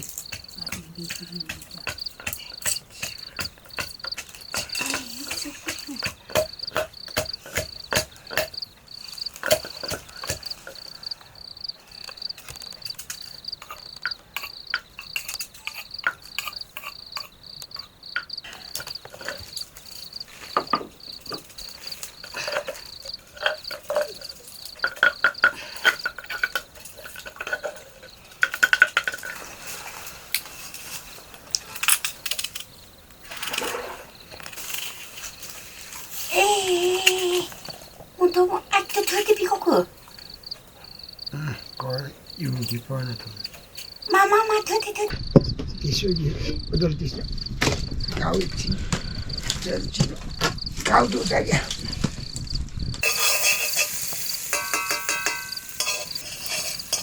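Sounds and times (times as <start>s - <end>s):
crickets trilling: 0.0s - 57.0s
cooking pots and utensils clinking: 12.4s - 30.1s, 53.0s - 57.0s.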